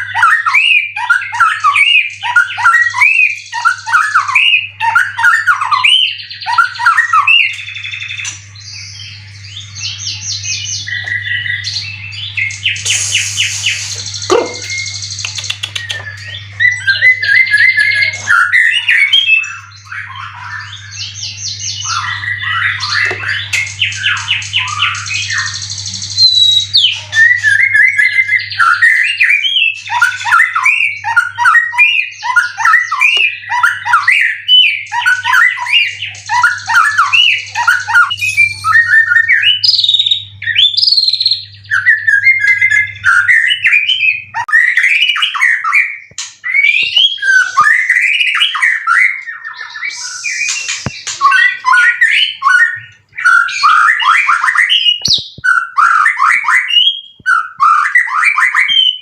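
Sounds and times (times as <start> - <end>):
songbird whistling and trilling: 0.0 - 59.0.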